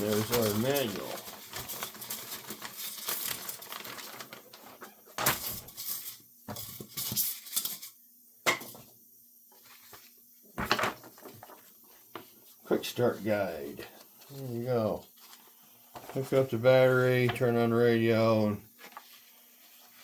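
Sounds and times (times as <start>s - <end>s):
packaging rustling: 0.0s - 6.1s, 9.6s - 12.4s.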